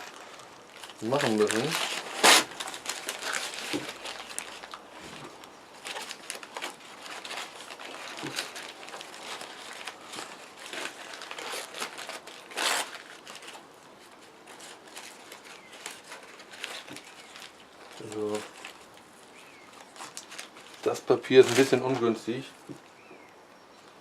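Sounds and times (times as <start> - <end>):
paper crinkling and rustling: 0.0 - 22.9.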